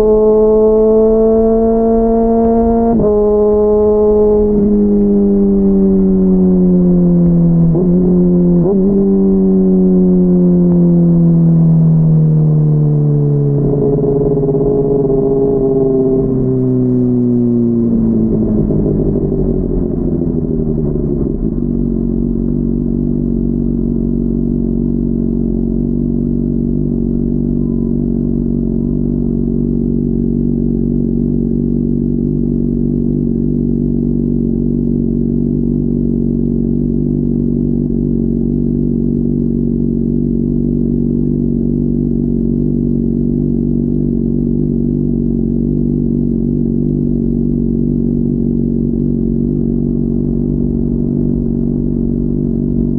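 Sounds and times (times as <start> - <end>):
muffled motorcycle engine idling: 0.0 - 52.9.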